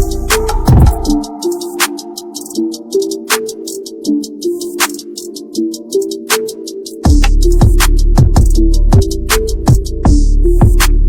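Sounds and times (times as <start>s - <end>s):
electronic beat music: 0.0s - 11.0s.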